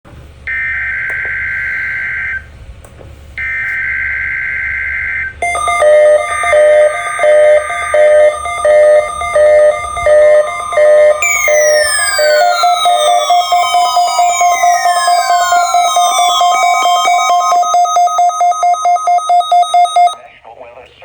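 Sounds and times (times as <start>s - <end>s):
steady pulsing tone: 5.4s - 20.2s
warbling digital data tones: 5.4s - 20.2s.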